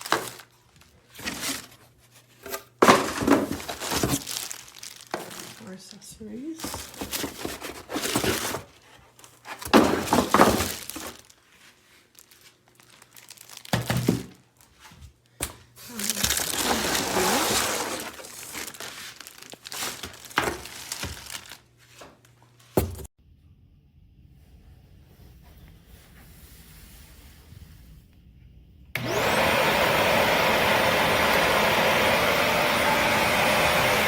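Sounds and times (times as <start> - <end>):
plastic and cardboard crinkling: 0.0 - 23.0.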